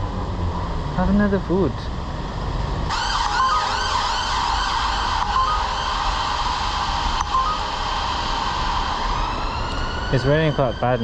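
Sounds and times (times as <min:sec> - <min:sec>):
rushing street noise: 0:00.0 - 0:11.0
emergency siren yelping: 0:02.9 - 0:11.0
short high beeps: 0:07.2 - 0:07.7.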